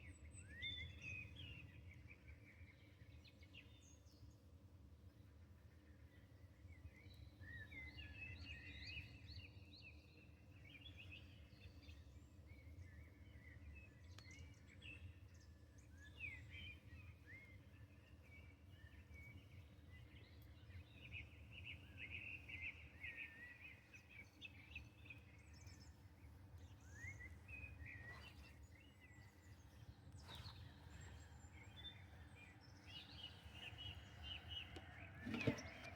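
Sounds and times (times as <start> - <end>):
songbirds chirping: 10.7 - 35.9.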